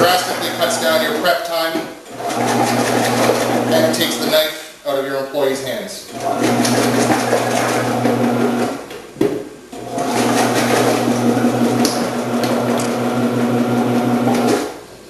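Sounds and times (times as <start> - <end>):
electric motor humming: 2.2 - 4.3, 6.1 - 8.8, 9.8 - 14.7.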